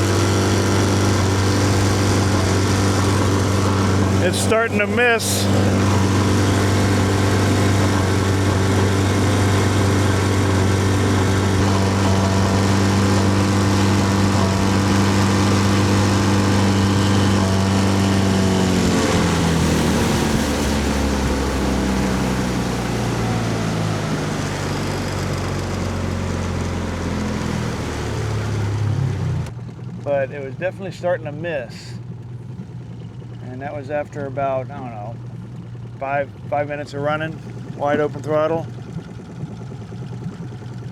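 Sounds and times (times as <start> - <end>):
outboard motor running: 0.0 - 40.9.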